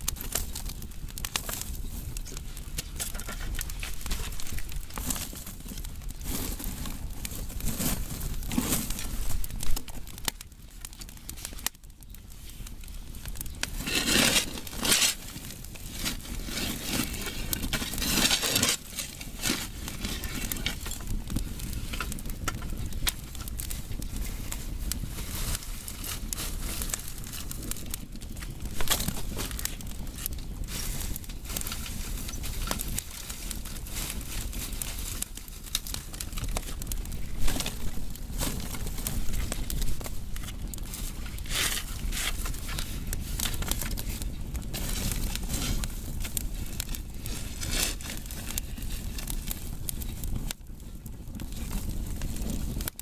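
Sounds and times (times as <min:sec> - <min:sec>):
firewood crackling and popping: 0:00.0 - 0:53.0.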